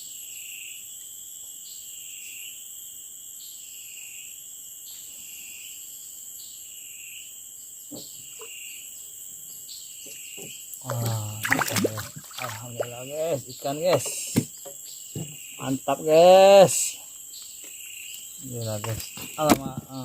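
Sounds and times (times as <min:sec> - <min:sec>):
insects droning: 0:00.0 - 0:20.0
pulsing insect call: 0:05.2 - 0:20.0.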